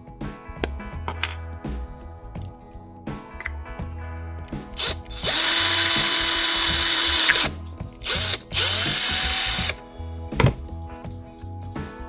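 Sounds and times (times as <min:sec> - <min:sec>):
small electric drill running: 0:04.8 - 0:09.8.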